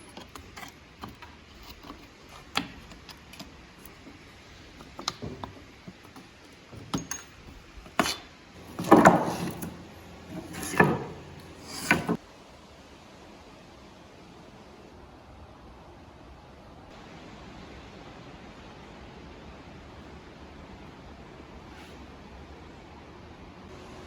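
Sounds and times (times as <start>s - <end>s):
clattering knocks: 4.9s - 12.2s.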